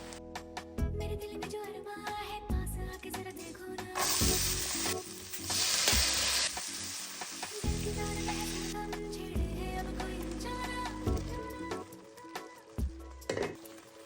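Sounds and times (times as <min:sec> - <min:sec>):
food sizzling in hot oil: 0:04.0 - 0:09.0.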